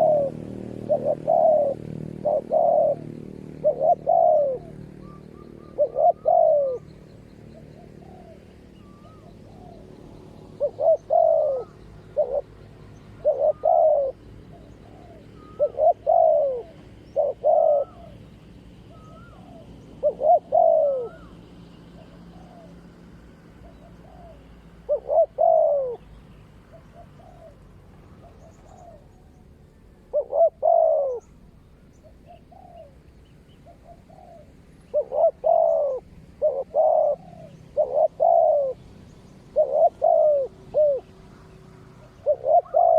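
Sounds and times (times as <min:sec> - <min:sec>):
doves cooing: 0:00.0 - 0:42.9.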